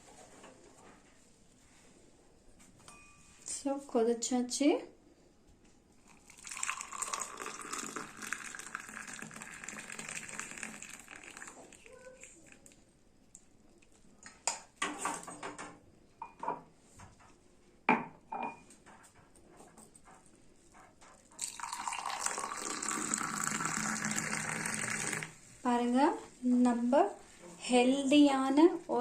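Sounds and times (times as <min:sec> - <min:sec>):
milk pouring from a pan: 0:06.1 - 0:12.8, 0:21.4 - 0:25.4.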